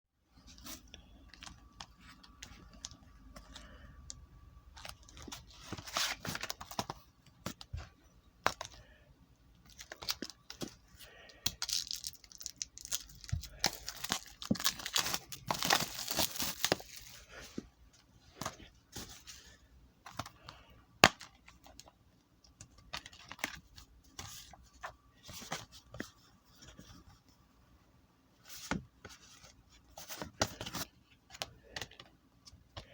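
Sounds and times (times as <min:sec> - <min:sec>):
packaging being torn and crinkled: 0:11.5 - 0:17.0.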